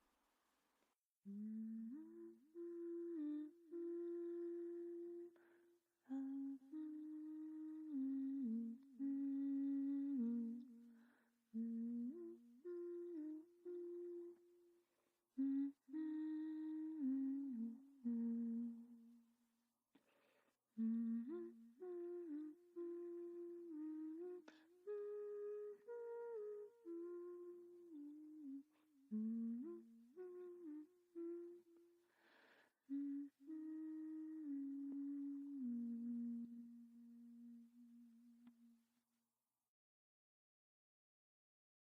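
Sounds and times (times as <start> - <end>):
person humming a melody: 1.2 - 14.8, 15.4 - 19.3, 20.8 - 38.8.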